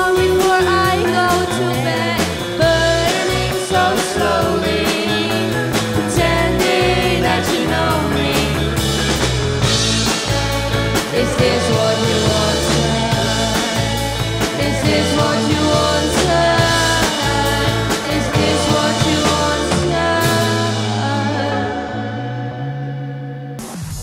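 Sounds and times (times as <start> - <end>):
rock band playing live: 0.0 - 24.0.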